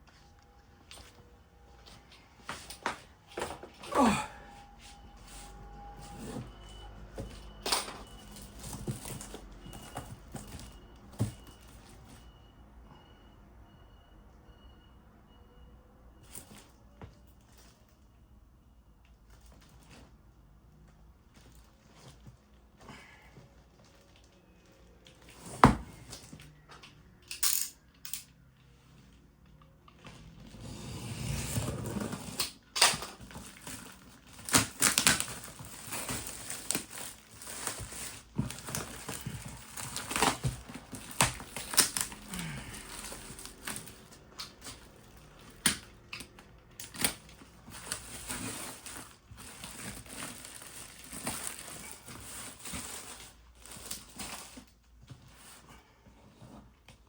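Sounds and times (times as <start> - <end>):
cardboard box rustling and scraping: 5.2 - 7.5, 8.1 - 11.6, 30.4 - 32.4, 33.2 - 45.3, 47.2 - 56.8.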